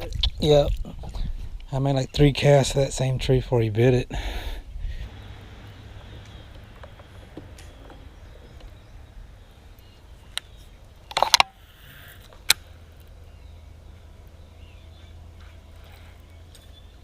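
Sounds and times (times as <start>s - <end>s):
steady low hum: 4.2s - 17.0s.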